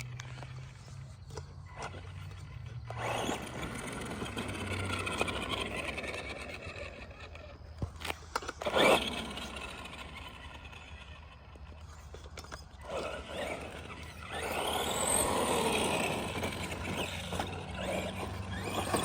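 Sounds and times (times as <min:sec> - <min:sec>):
electric motor of toy truck: 0:00.0 - 0:19.0
tyre and ground noise: 0:00.0 - 0:19.0.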